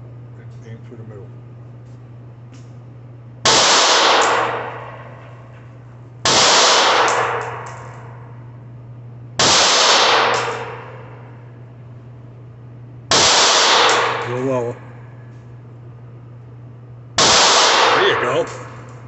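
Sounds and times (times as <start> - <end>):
steady low hum: 0.0 - 19.0
pistol shots echoing indoors: 3.4 - 5.5, 6.2 - 8.4, 9.4 - 11.5, 13.1 - 14.9, 17.2 - 19.0.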